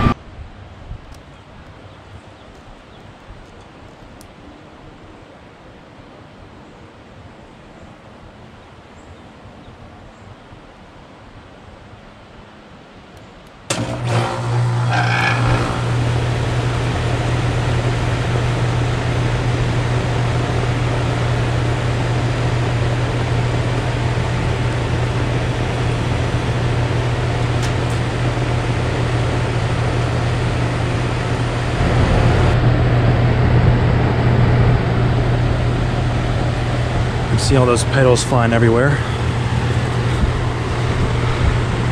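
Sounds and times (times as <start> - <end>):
air conditioner compressor hum: 13.7 - 41.9
condenser fan whoosh: 13.7 - 41.9.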